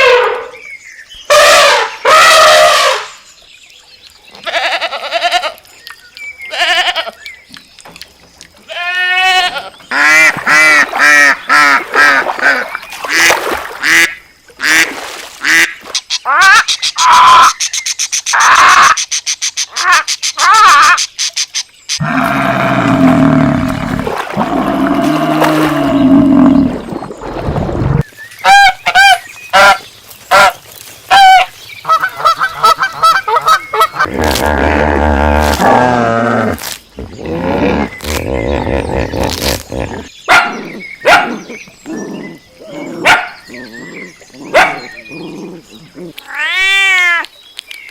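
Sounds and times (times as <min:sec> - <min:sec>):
deep animal call: 0:22.0 - 0:28.0, 0:32.6 - 0:40.1
geese cackling calls: 0:28.4 - 0:34.1
waterfowl honking: 0:28.4 - 0:34.1.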